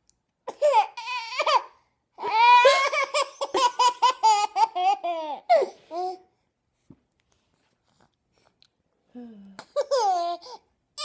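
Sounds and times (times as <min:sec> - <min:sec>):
baby laughing: 0:00.6 - 0:06.2, 0:09.8 - 0:10.6.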